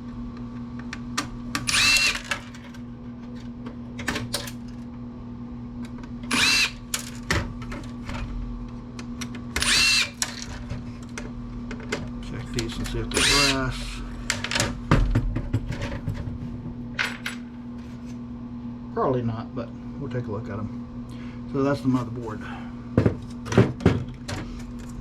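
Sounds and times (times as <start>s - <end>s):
power drill spinning: 1.6s - 2.3s, 6.3s - 6.8s, 9.6s - 10.2s, 13.1s - 14.0s.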